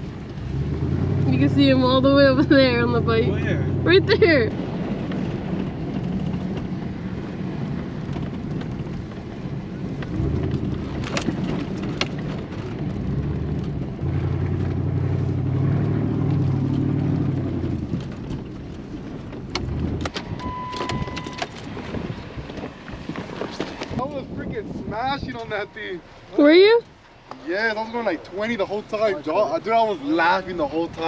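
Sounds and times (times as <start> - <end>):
short high beep: 20.4 - 21.4.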